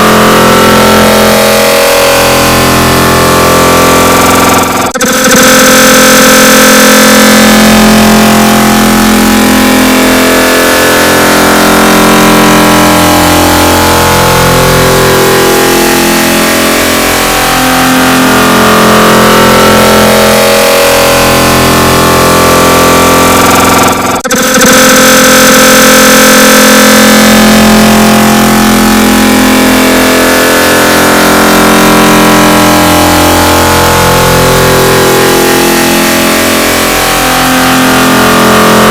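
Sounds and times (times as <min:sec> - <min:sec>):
distorted drone of held tones: 0:00.0 - 0:38.9.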